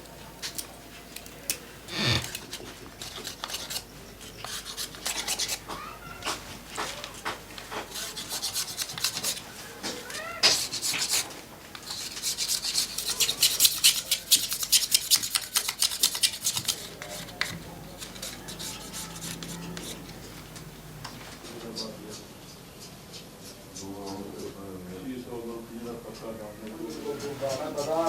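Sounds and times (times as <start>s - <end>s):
tool rasping bamboo: 1.8s - 5.6s, 11.9s - 20.3s.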